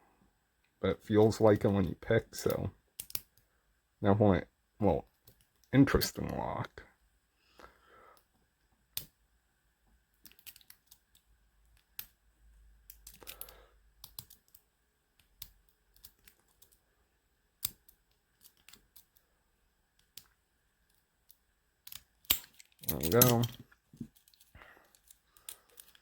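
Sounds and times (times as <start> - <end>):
lock picking metallic clicks: 2.5 - 3.4, 10.2 - 12.2, 12.8 - 14.6, 17.6 - 19.2, 20.9 - 26.0
padlock shackle snapping open: 3.0 - 3.4, 10.2 - 11.0, 12.8 - 14.6, 21.3 - 26.0.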